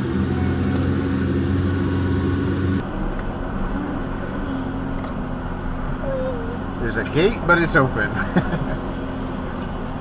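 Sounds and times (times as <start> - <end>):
diesel engine idling: 0.0 - 2.8.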